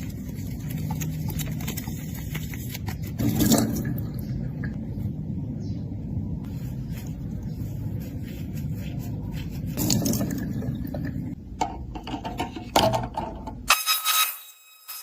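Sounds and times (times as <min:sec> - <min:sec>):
steady low rumble: 0:00.0 - 0:12.0.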